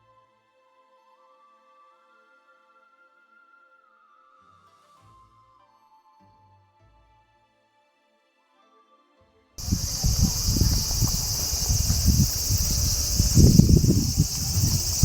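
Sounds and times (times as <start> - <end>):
cicadas buzzing: 9.6 - 15.0.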